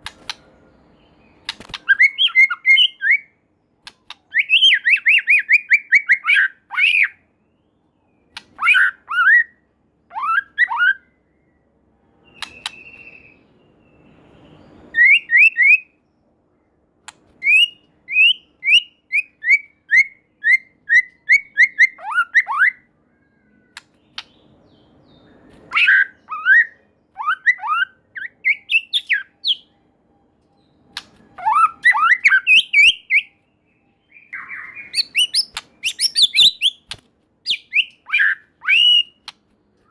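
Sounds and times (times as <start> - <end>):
bird singing whistled notes: 0.8 - 3.4, 4.2 - 16.7, 17.4 - 39.9.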